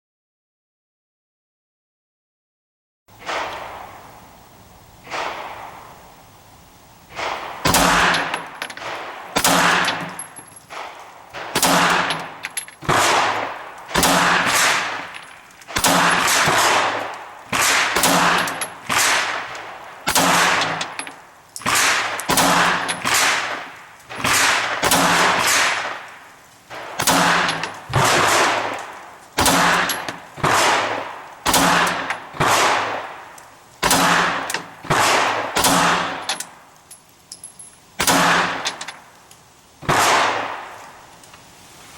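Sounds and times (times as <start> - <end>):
pistol shots with ringing echo: 3.2 - 4.1, 5.0 - 6.1, 7.1 - 21.0, 21.6 - 36.6, 38.0 - 38.8, 39.8 - 40.7.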